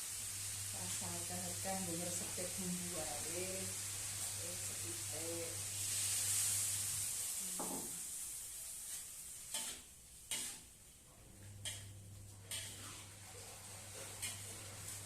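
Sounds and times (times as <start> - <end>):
stir-fry sizzling in a wok: 0.0 - 15.0.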